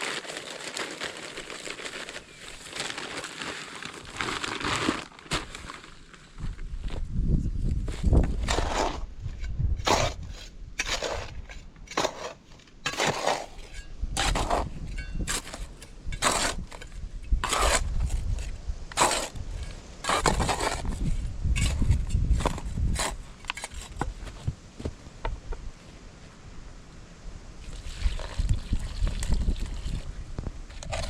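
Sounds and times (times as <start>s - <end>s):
crunching and scraping: 0.0s - 25.0s, 30.7s - 31.0s
wind rumble on microphone: 6.4s - 11.5s, 13.9s - 25.8s, 27.2s - 31.0s.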